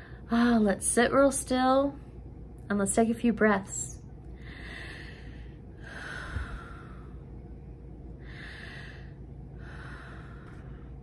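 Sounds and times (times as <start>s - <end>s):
woman breathing deeply: 0.0s - 0.4s, 4.3s - 11.0s.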